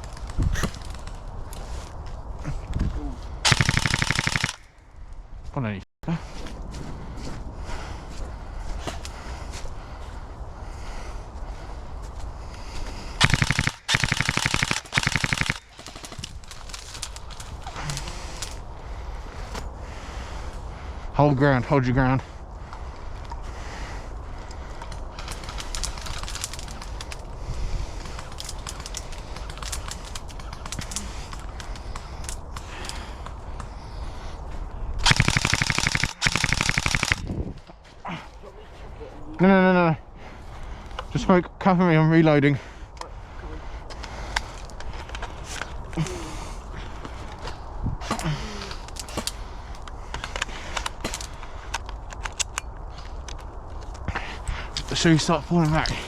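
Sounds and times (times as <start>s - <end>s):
airsoft gun clicking and rattling: 0.0s - 1.9s, 3.4s - 4.8s, 13.2s - 18.7s, 24.4s - 33.7s, 35.0s - 37.7s, 43.9s - 46.2s, 47.0s - 56.0s
airsoft gun full-auto bursts: 3.4s - 4.7s, 13.2s - 16.2s, 35.0s - 37.3s
faint airsoft cracks: 35.0s - 37.3s
faint voice: 38.1s - 39.4s.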